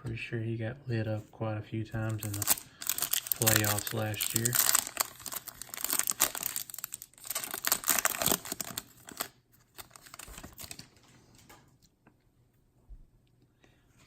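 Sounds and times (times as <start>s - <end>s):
foil wrapper crinkling: 2.0s - 11.0s.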